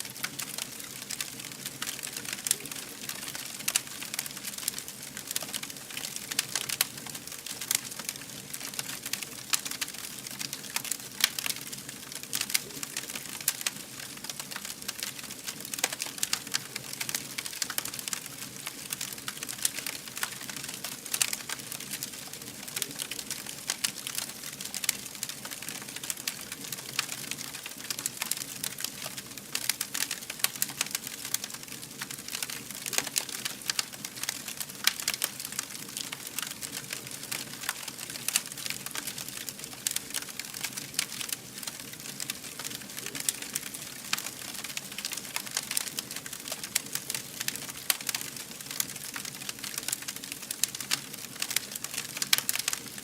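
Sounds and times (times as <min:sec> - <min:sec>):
fire crackling: 0:00.0 - 0:53.0.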